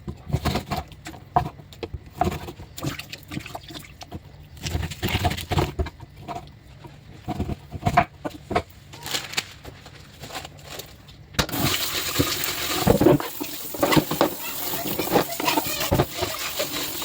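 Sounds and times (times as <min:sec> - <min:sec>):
water running: 0:11.5 - 0:17.0.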